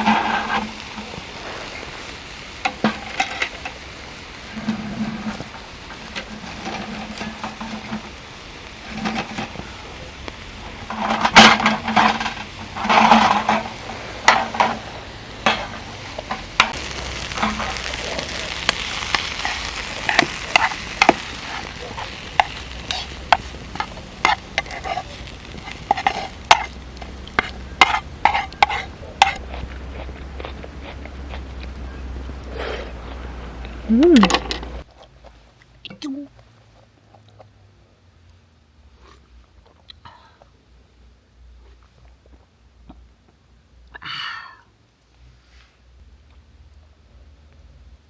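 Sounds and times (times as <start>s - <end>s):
utensil clinking and scraping pan: 0.0s - 1.3s, 2.6s - 3.8s, 4.4s - 8.2s, 8.8s - 9.7s, 10.7s - 29.4s
food sizzling in a pan: 0.0s - 29.4s.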